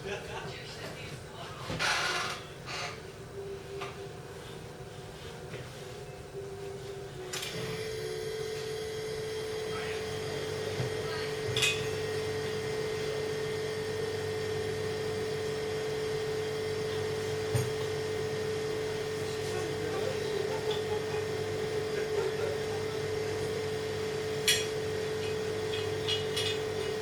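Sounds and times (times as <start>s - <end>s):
steamer humming: 7.3s - 27.0s.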